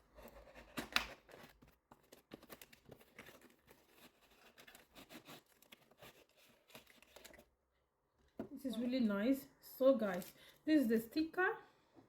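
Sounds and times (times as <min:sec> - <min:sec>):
packaging rustling and crackling: 0:00.6 - 0:07.5.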